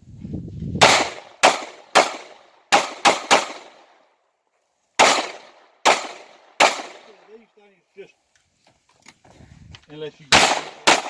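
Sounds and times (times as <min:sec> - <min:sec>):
pistol shots with echo: 0:00.8 - 0:03.9, 0:05.0 - 0:07.2, 0:10.3 - 0:11.0.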